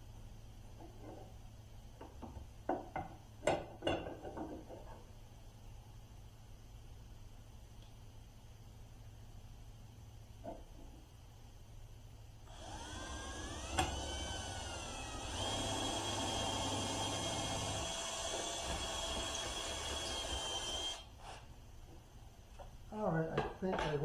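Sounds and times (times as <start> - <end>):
electric drill boring wood: 12.5 - 21.4.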